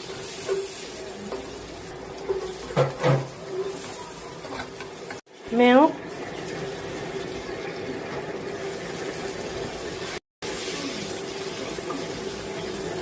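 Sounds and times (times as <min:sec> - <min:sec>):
milk hissing in a pan: 0:06.1 - 0:13.0.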